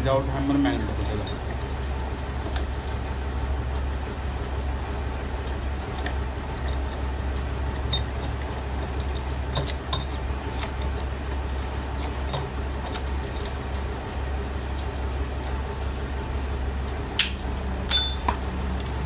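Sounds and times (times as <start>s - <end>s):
steady low hum: 0.0s - 19.0s
metal clinks of hand tools: 0.9s - 1.7s, 7.7s - 13.5s, 17.9s - 18.4s.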